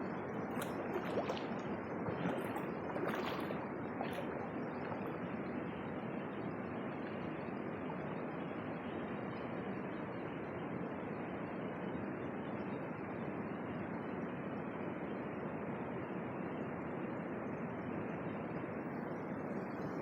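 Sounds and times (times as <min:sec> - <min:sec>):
creek water rushing over rocks: 0:00.4 - 0:05.5.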